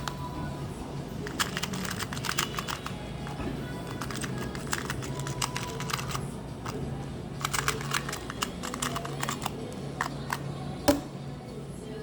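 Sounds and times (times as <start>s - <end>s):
plastic puzzle layers clicking: 1.3s - 3.0s, 3.9s - 6.2s, 7.4s - 10.4s.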